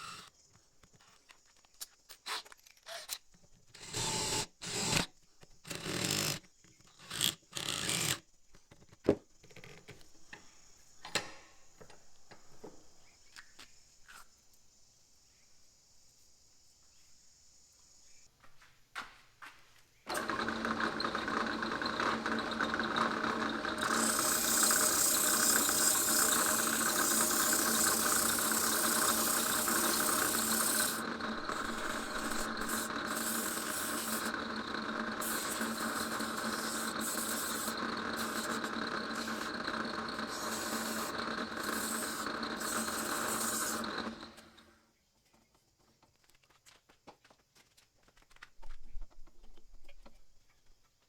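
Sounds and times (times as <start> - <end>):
grinder motor hum: 3.8 - 6.4, 20.1 - 44.7
grinding hiss on metal: 23.8 - 34.3, 35.2 - 39.6.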